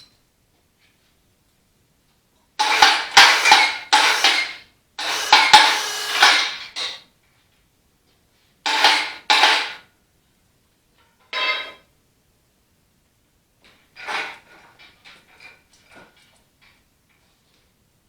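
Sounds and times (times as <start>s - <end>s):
faint metallic ringing: 0.0s - 0.2s.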